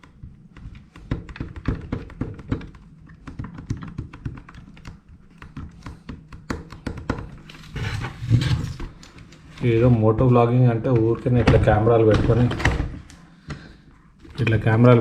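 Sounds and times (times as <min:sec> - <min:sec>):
plastic parts clicking and tapping: 0:00.0 - 0:07.6.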